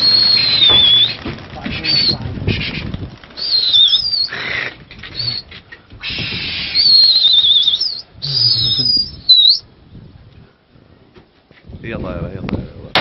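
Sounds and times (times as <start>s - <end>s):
high wavering whistles: 0.0s - 1.2s, 1.8s - 2.8s, 3.4s - 4.3s, 5.1s - 5.5s, 6.1s - 9.7s.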